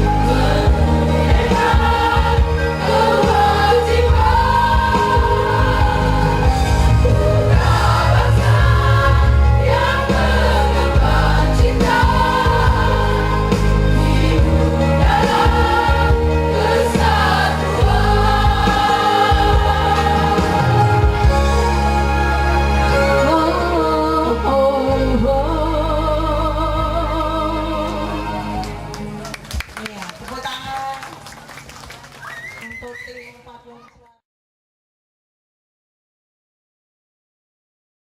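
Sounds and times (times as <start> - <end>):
choir singing: 0.0 - 28.6
low accompaniment: 0.0 - 29.6.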